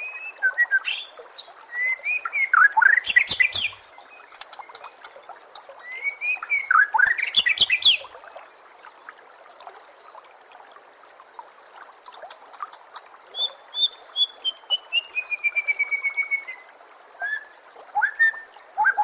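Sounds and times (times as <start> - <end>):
songbird whistling song: 0.0 - 3.8, 5.8 - 8.1, 13.3 - 19.0.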